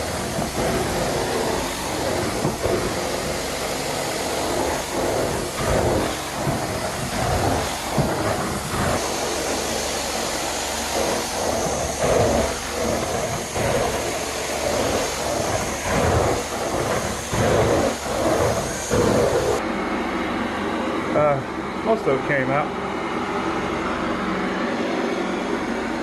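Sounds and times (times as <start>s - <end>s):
carpet extractor vacuum roar: 0.0s - 26.0s.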